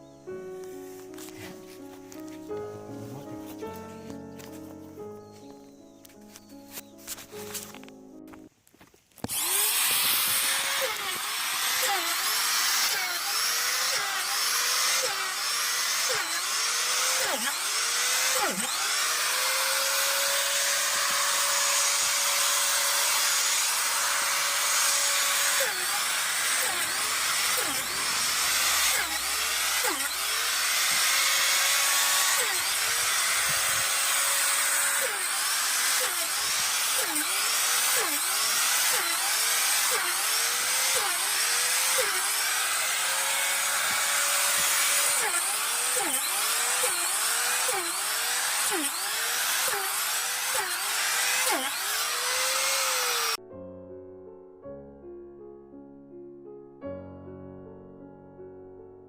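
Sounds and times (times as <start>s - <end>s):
electric drill boring into wood: 9.2s - 53.4s.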